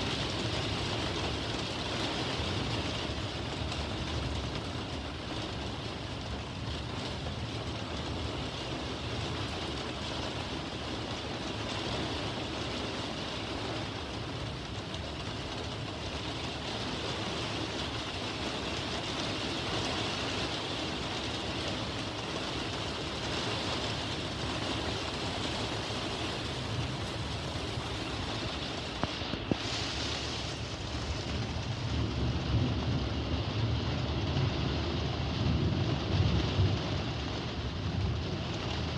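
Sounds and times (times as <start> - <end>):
heavy rain: 0.0 - 38.9
wind: 0.0 - 38.9
low rumble of thunder: 18.3 - 38.9.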